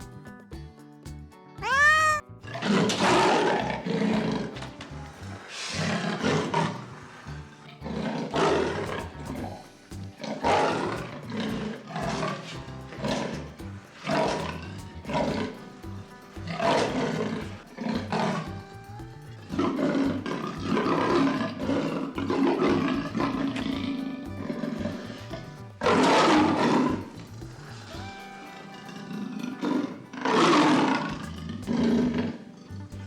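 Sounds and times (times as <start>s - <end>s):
background music with steady beat: 0.0s - 2.2s, 2.8s - 33.0s
lion roaring: 1.7s - 15.6s, 19.5s - 27.9s, 28.6s - 32.8s.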